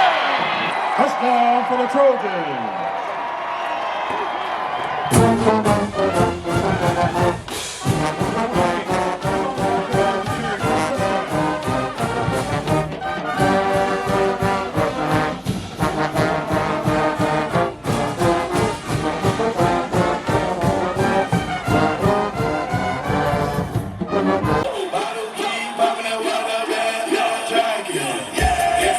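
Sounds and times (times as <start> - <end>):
steady drum beat: 5.1 - 24.7, 28.4 - 28.9
trombones and trumpets tune: 5.1 - 24.9.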